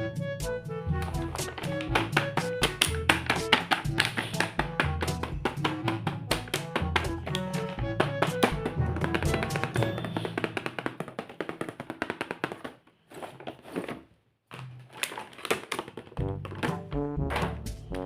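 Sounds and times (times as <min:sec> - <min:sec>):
music with fast percussive beat: 0:01.2 - 0:11.0.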